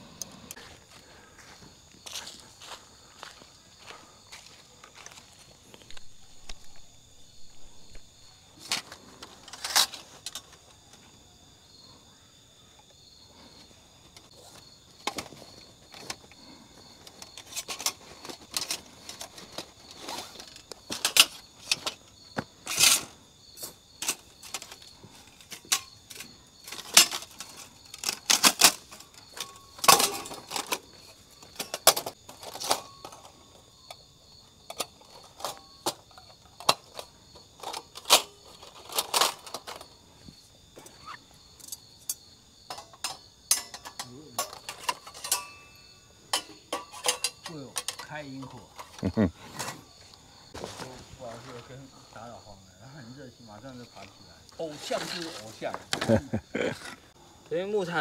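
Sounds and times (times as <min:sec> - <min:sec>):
camping gear clicks and clatter: 0:03.3 - 0:11.5, 0:12.8 - 0:51.7, 0:53.8 - 0:57.2.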